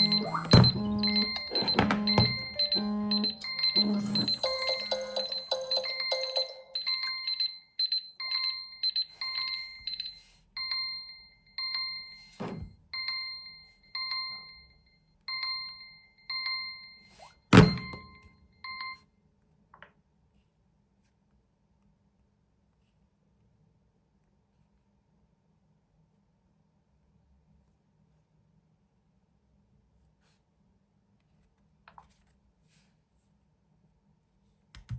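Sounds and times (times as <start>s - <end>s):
electronic alarm chime: 0.0s - 14.6s, 15.3s - 19.0s.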